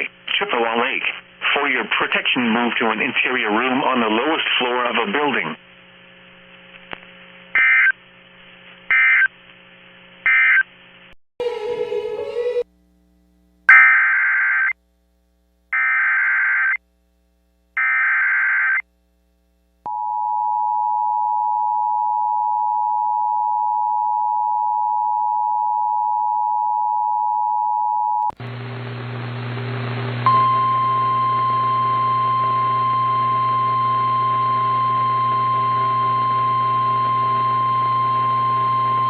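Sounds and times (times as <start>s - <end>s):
steady tone: 11.4s - 12.8s.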